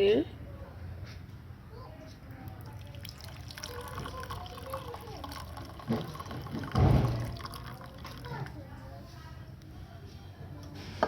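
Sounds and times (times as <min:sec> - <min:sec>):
liquid trickling into a glass: 0:02.3 - 0:08.7.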